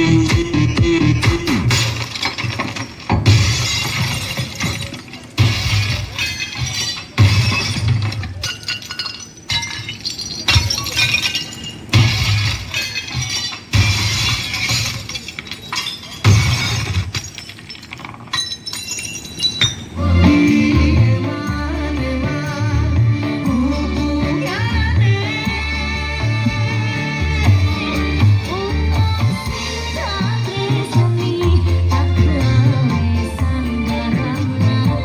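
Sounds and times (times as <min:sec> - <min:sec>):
bass-heavy music over car speakers: 0:00.0 - 0:02.1, 0:19.8 - 0:35.0
sharp crashing glass-like hits: 0:01.2 - 0:20.7.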